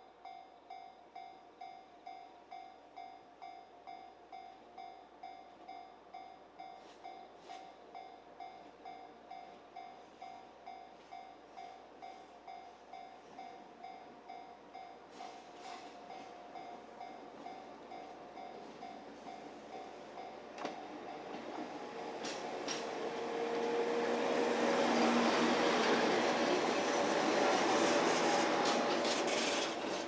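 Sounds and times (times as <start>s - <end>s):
level-crossing warning bell ringing: 0.2s - 20.5s.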